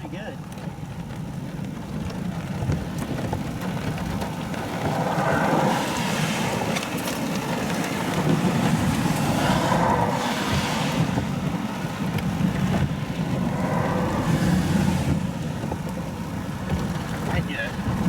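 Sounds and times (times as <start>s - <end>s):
car road and engine rumble: 0.0s - 18.0s
rushing noise: 4.7s - 16.5s.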